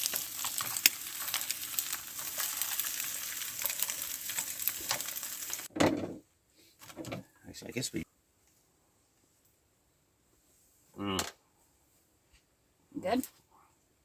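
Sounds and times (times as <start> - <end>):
food sizzling in a frying pan: 0.0 - 5.7.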